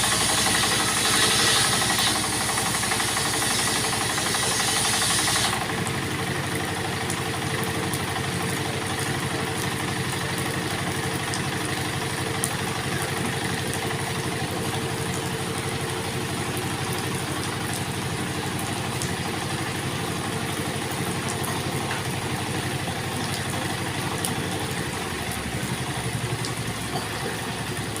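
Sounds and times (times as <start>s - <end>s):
circular saw spinning free: 0.0s - 5.6s.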